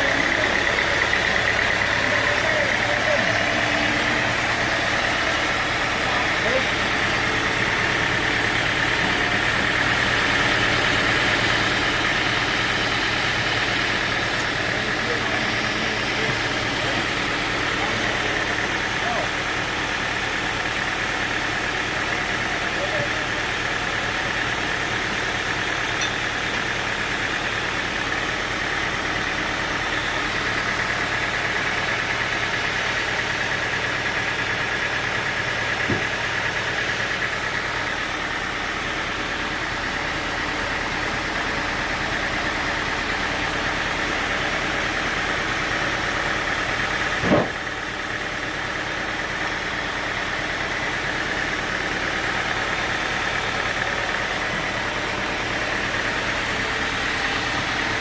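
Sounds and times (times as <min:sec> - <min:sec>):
sawmill machinery running: 0:00.0 - 0:58.0
sharp knock: 0:47.2 - 0:47.6.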